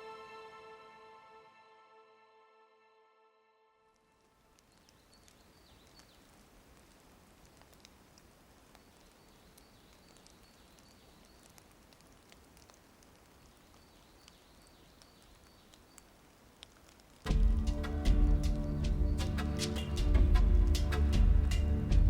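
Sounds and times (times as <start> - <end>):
small ticks: 4.5 - 17.3.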